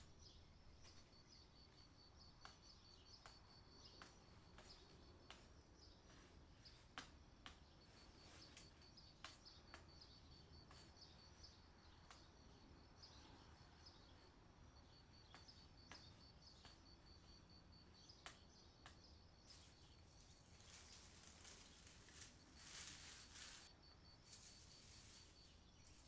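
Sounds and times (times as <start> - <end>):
light hiss: 19.4 - 26.0.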